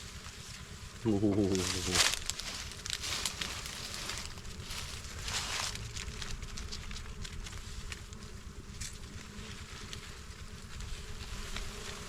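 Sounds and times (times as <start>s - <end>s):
bees buzzing: 0.0s - 5.9s
rustling bursts: 1.5s - 5.8s.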